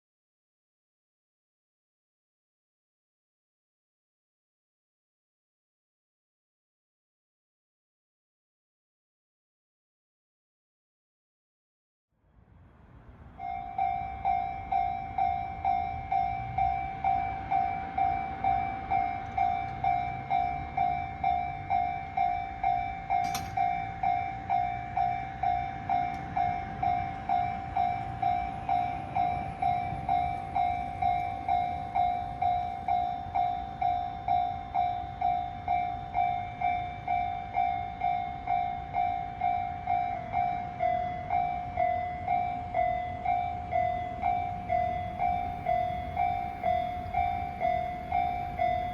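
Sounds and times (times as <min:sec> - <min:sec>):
level crossing alarm ringing: 0:13.4 - 0:48.9.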